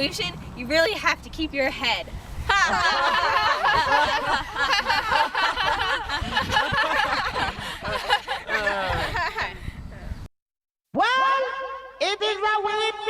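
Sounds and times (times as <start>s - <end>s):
people laughing and giggling: 2.5s - 9.9s.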